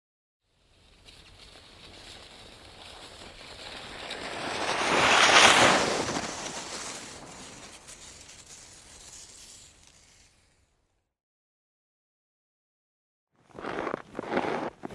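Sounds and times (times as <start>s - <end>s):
skis hissing over snow: 0.6s - 10.7s.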